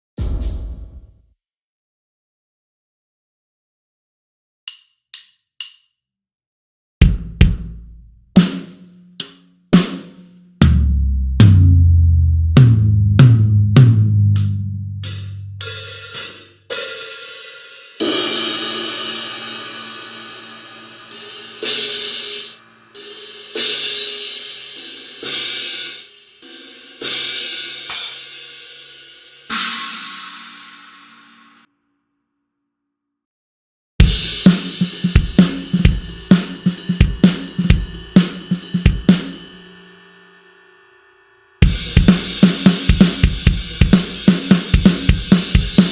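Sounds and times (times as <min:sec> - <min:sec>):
low drum hits: 0:00.2 - 0:01.2
cymbal crashes: 0:18.0 - 0:26.0, 0:29.5 - 0:31.0.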